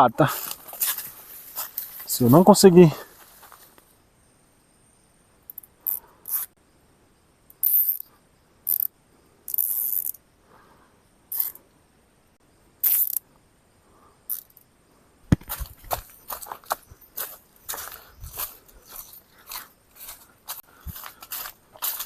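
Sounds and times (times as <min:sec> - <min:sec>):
crunching in dry leaf litter: 0:17.2 - 0:22.0.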